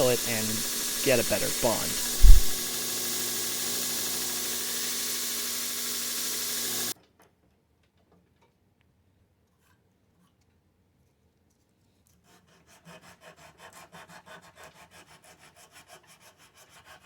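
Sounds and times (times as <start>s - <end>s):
low hum: 0.0s - 2.7s
steady hiss: 0.0s - 6.9s.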